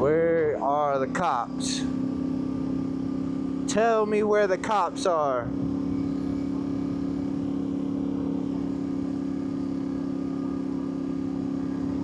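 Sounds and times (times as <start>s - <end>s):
motorcycle engine cruising: 0.0s - 12.0s
wind and road noise: 4.5s - 12.0s.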